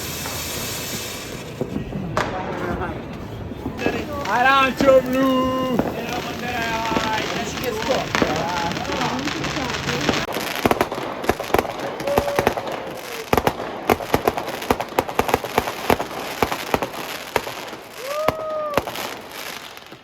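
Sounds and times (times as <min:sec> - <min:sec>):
rising firework whistle: 0:00.0 - 0:02.2, 0:03.2 - 0:10.7, 0:11.3 - 0:13.6, 0:17.7 - 0:19.9
fireworks bangs and cracks: 0:00.0 - 0:20.0
fireworks crackling: 0:00.0 - 0:20.0.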